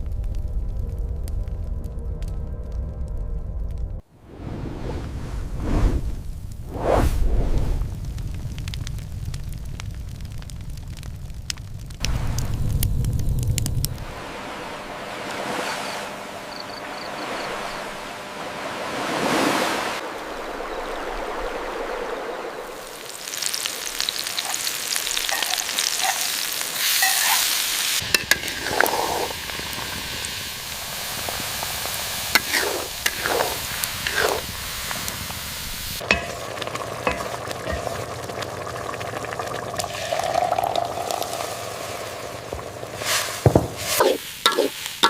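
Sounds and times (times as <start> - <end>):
food sizzling in a pan: 22.8 - 45.0.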